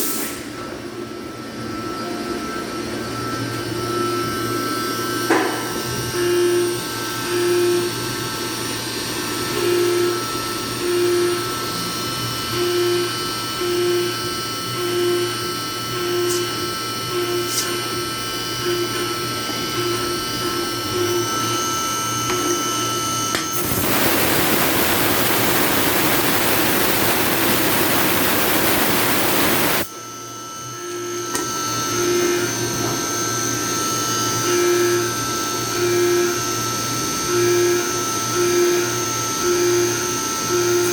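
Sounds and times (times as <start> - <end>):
milling machine whine: 1.2 - 40.9
coolant hiss: 23.5 - 29.8
pulsing low hum: 23.6 - 29.9.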